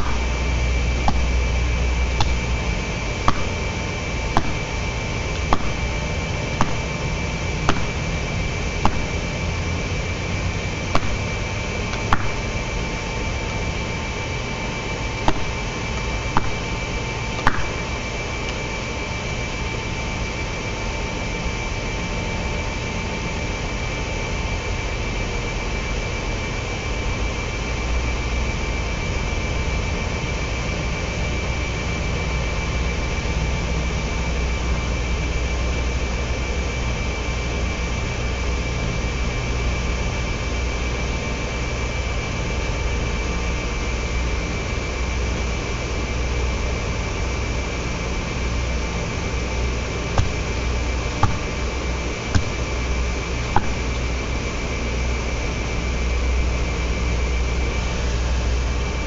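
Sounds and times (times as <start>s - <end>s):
blows striking a tree trunk: 0.0s - 0.4s, 1.0s - 1.5s, 2.1s - 2.6s, 3.2s - 3.6s, 4.3s - 8.2s, 8.8s - 9.4s, 11.0s - 11.3s, 12.0s - 12.5s, 15.3s - 15.6s, 16.4s - 16.7s, 17.4s - 17.8s, 50.2s - 51.7s, 52.3s - 52.8s, 53.6s - 54.0s
mechanical hum: 0.0s - 59.0s.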